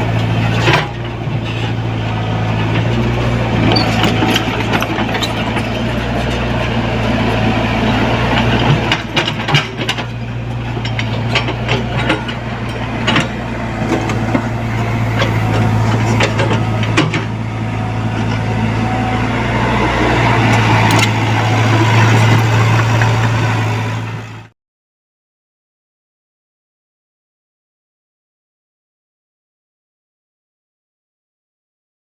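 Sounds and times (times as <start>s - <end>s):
excavator diesel engine running: 0.0s - 24.5s
metallic clanks and knocks: 3.6s - 6.5s, 8.3s - 17.4s.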